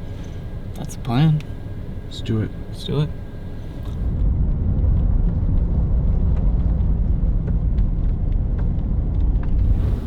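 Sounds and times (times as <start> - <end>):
wind buffeting microphone: 4.0 - 10.0.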